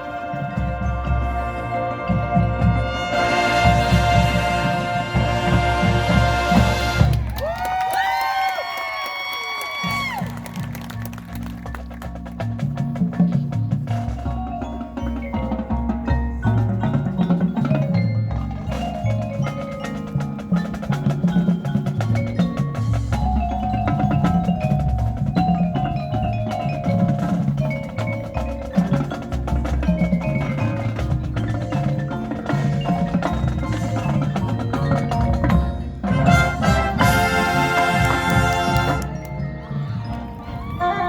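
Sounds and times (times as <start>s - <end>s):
marimbas and bells playing: 0.0s - 7.6s, 9.8s - 41.0s.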